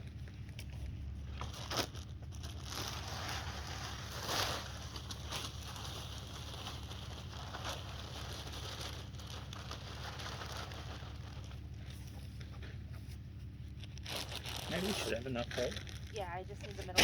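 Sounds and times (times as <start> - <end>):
plastic bags crinkling: 0.0 - 12.7, 13.5 - 17.0
soil pattering down: 0.0 - 12.8
steady low hum: 0.0 - 17.0.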